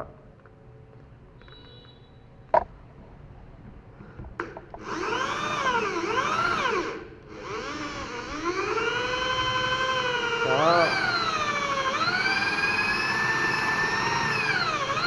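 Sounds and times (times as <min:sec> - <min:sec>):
drill motor whine: 0:04.8 - 0:15.0.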